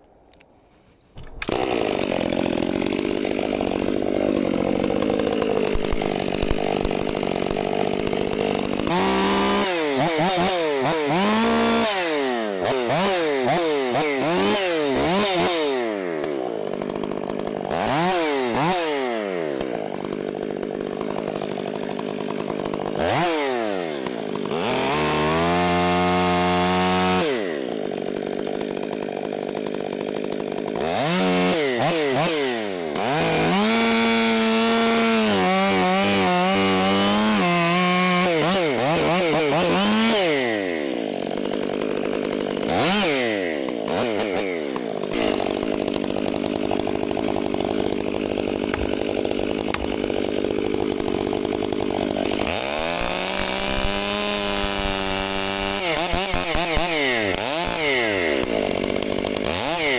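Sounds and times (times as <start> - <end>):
chainsaw cutting wood: 1.2 - 59.9.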